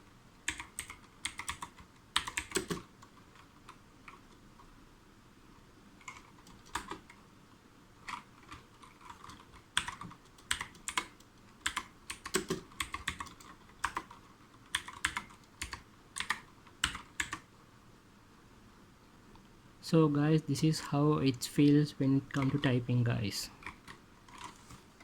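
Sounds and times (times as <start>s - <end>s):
clicky mechanical keyboard typing: 0.4s - 4.4s, 6.0s - 7.2s, 8.0s - 17.5s, 21.6s - 22.7s, 23.6s - 24.6s.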